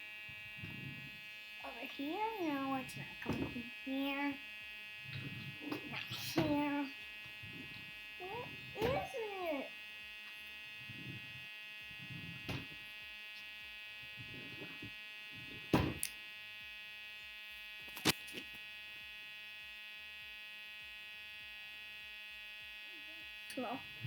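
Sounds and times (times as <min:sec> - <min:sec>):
electric buzzing hum: 0:00.0 - 0:24.0
sharp knocks: 0:12.4 - 0:12.8.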